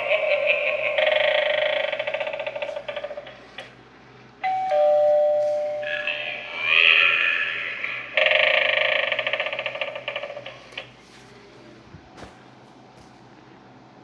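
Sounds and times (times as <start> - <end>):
two-note ding-dong chime: 4.4 - 6.0.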